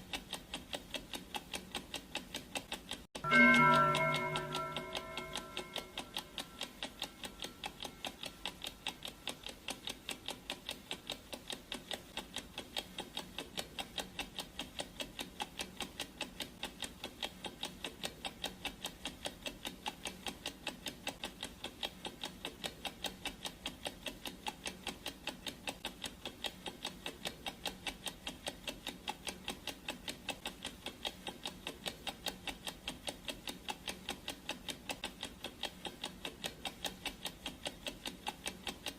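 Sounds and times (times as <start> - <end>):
clock ticking: 0.0 - 38.9
gong ringing: 3.2 - 6.6.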